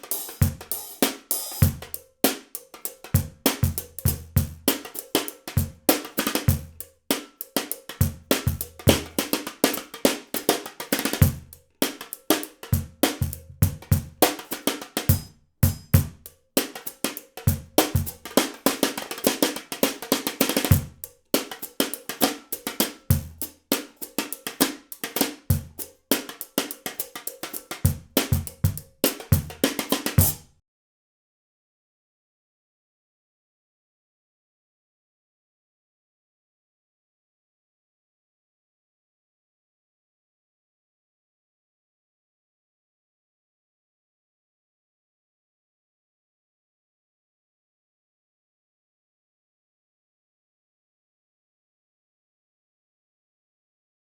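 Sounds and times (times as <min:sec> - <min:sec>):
cajon bass drum: 0:00.0 - 0:00.9, 0:01.6 - 0:01.9, 0:03.1 - 0:06.8, 0:07.9 - 0:11.6, 0:12.4 - 0:16.2, 0:17.4 - 0:23.7, 0:25.0 - 0:25.8, 0:27.6 - 0:30.5
snare drum: 0:00.0 - 0:30.5.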